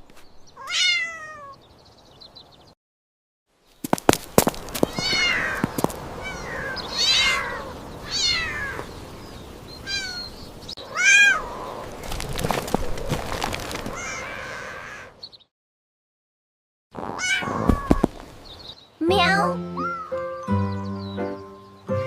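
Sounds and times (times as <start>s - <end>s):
cats meowing: 0.6s - 1.6s, 4.9s - 8.9s, 9.8s - 11.9s, 13.9s - 15.1s, 17.0s - 18.1s, 19.2s - 20.2s.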